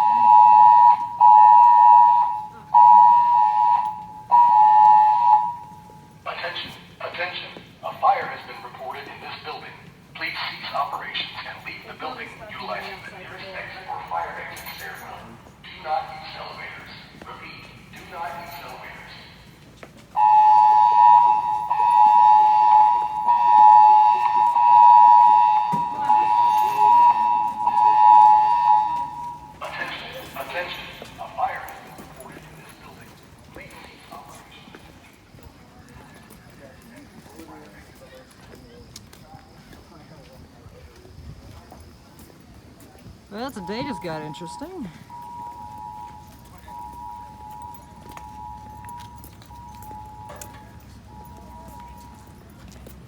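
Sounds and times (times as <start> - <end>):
fire alarm beeping: 0.0 - 9.2, 12.2 - 32.4, 43.3 - 53.0.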